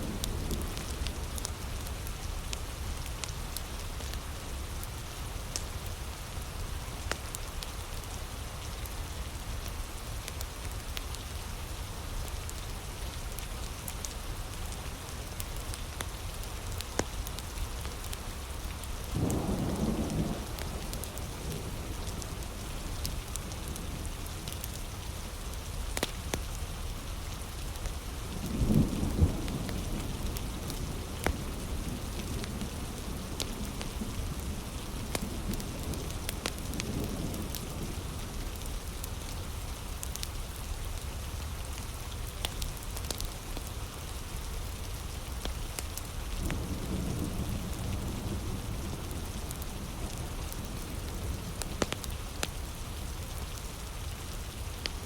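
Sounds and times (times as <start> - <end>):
heavy rain: 0.0 - 55.0
wood fire crackling: 12.2 - 55.0.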